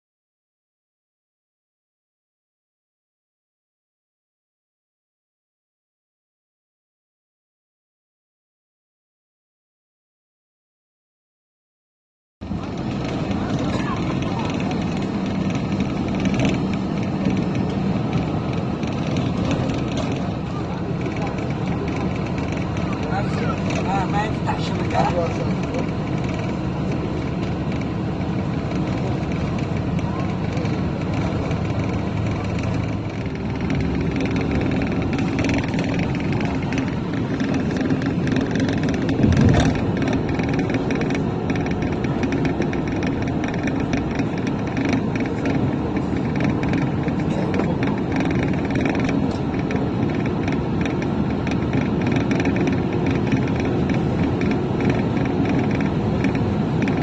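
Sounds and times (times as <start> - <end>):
road vehicle running noise: 12.4 - 57.0
vehicle bump: 12.4 - 57.0.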